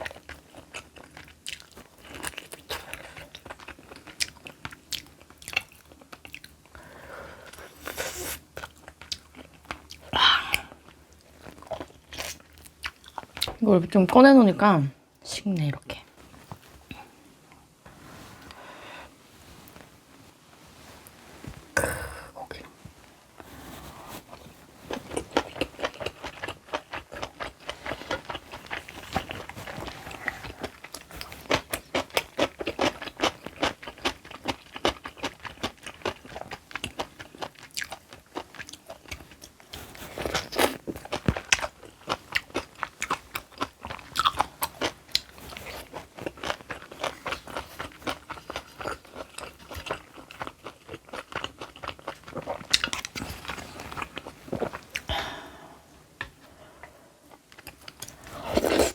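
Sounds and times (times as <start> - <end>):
chewing with wet crunches: 0.0 - 6.8, 8.5 - 13.6, 24.2 - 55.1.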